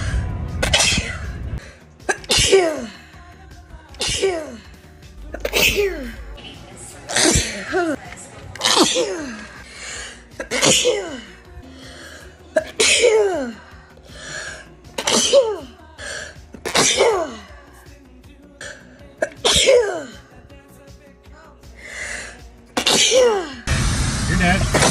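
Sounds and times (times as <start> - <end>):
person sneezing: 0.6 - 1.2, 2.0 - 2.9, 4.0 - 4.6, 15.0 - 15.7, 22.8 - 23.6.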